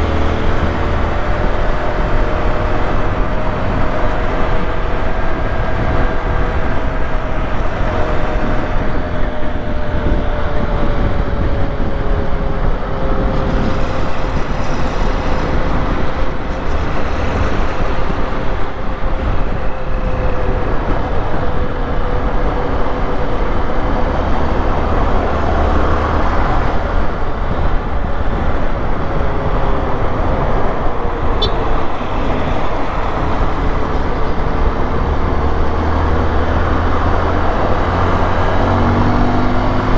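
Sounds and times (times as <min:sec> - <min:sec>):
rushing noise: 0:00.0 - 0:39.9
motorcycle engine rumbling: 0:26.2 - 0:39.9.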